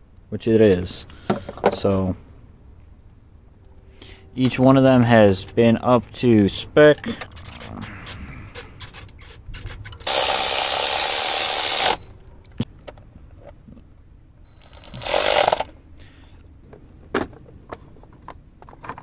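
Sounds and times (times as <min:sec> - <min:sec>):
tool clicks: 0:07.2 - 0:12.1, 0:14.6 - 0:15.7.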